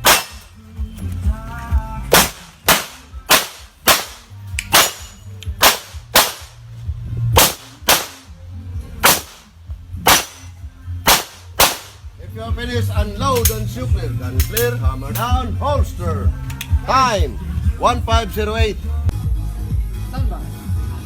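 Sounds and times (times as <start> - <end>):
pistol shots: 0.0 - 0.6, 2.1 - 6.6, 7.4 - 8.3, 9.0 - 12.1.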